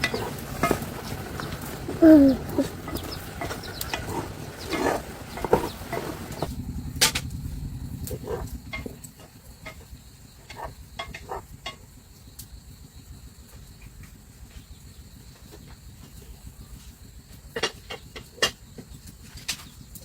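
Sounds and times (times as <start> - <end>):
low rumble: 0.0 - 12.2.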